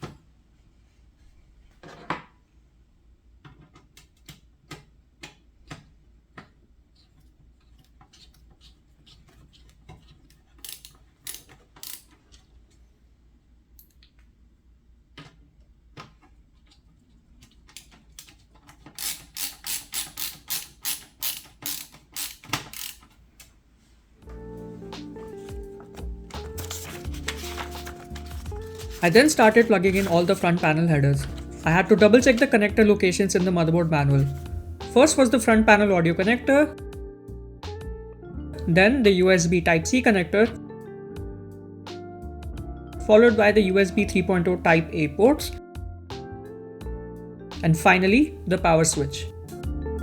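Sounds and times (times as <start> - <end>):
ratcheting screwdriver clicking: 10.6 - 12.2, 17.7 - 23.2.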